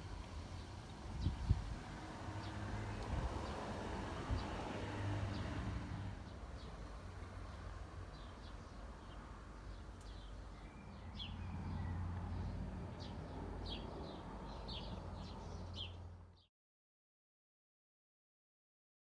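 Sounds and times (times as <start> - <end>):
small birds chirping: 7.5 - 16.0.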